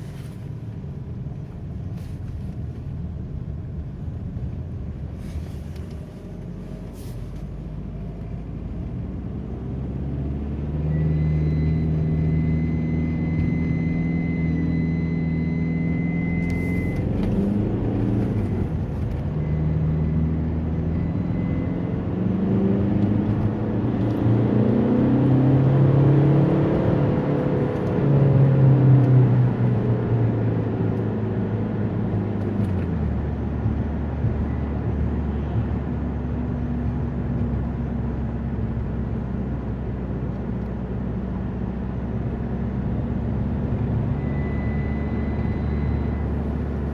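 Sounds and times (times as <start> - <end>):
high steady whistle: 10.9 - 17.0, 44.1 - 46.4.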